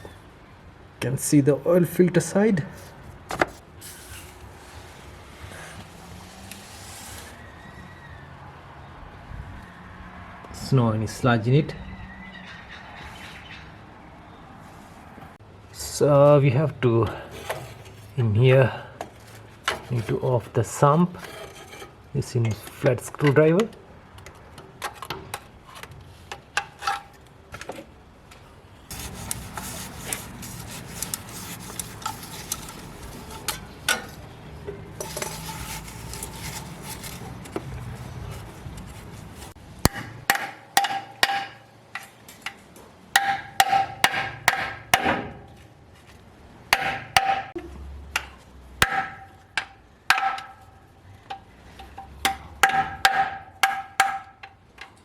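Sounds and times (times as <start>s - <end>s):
screwdriver scraping metal: 28.9s - 34.2s, 35.0s - 37.6s.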